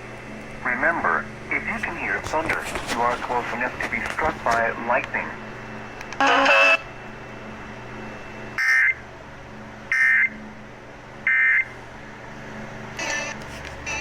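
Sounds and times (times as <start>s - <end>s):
low steady hum: 0.0s - 14.0s
digital data tone bursts: 6.2s - 6.8s.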